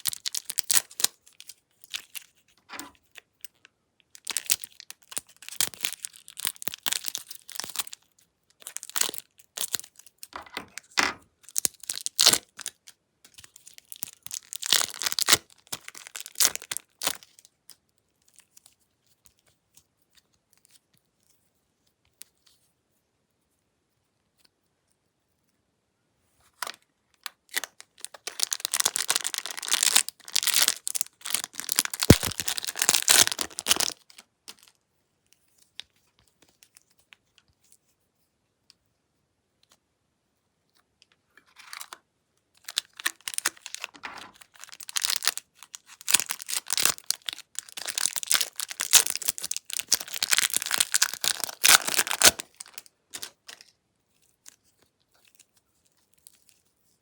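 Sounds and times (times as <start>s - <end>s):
slime crackling and popping: 27.5s - 34.6s, 44.4s - 53.4s.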